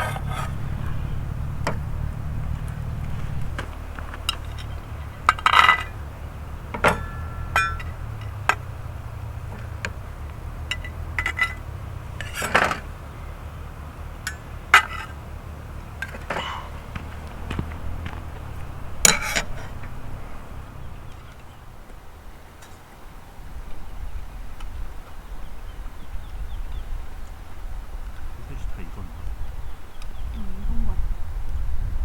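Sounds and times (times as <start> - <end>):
low steady rumble: 0.0 - 32.0
metal utensils clinking on pans: 2.7 - 12.9, 18.6 - 21.3.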